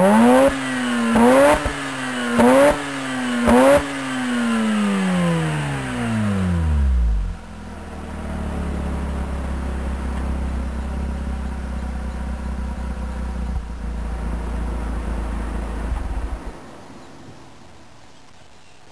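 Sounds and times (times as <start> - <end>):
rotary engine idling: 4.7 - 16.6.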